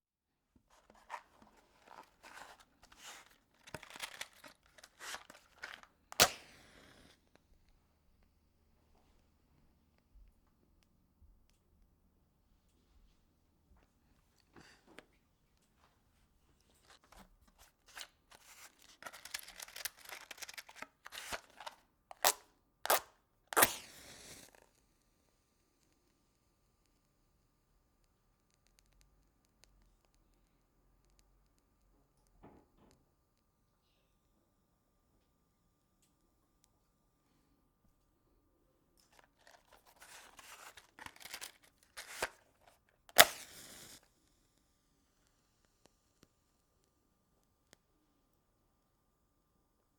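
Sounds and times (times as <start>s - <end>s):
match striking: 1.9s - 7.2s, 17.9s - 24.6s, 39.2s - 42.4s, 43.1s - 44.0s
match flaring with a hiss: 6.2s - 7.2s, 23.6s - 24.6s, 43.2s - 44.0s
matches rattling in a box: 18.4s - 22.2s, 39.4s - 42.4s.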